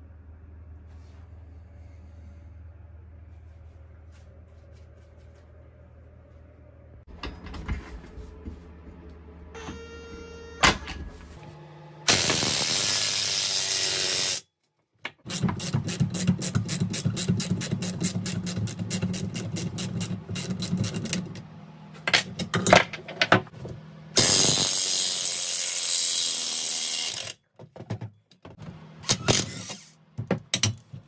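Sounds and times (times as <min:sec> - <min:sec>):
loud hissing tool: 0:12.1 - 0:14.4, 0:24.2 - 0:27.3.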